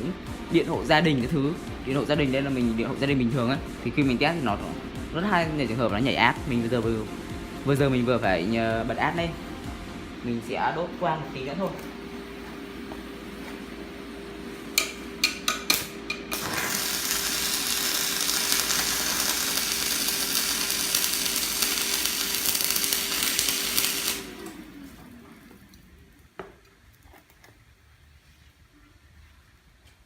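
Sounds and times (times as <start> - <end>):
welding arc sizzling: 0.0 - 26.3
welding rod crackles: 11.6 - 25.0.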